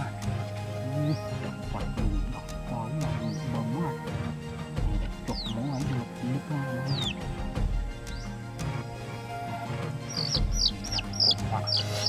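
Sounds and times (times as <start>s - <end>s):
background music with low tone: 0.0s - 12.0s
high falling chirps: 10.0s - 12.0s.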